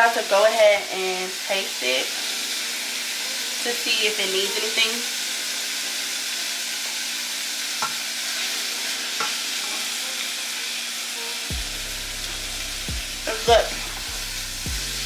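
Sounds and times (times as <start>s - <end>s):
meat sizzling in a frying pan: 0.0s - 15.0s
low hum: 11.5s - 15.0s.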